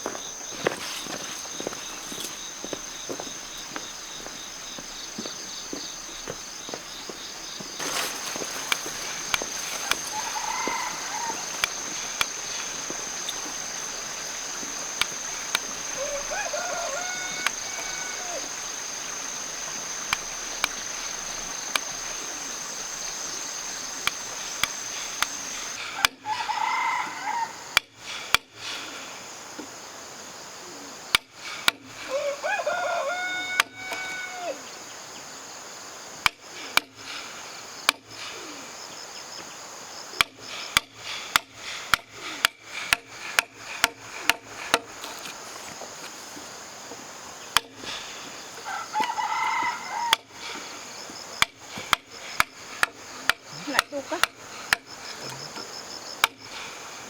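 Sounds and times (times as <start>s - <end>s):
high insect drone: 0.0s - 57.0s
rooster crowing: 7.8s - 20.0s, 24.8s - 27.8s, 32.0s - 34.7s, 48.6s - 50.7s.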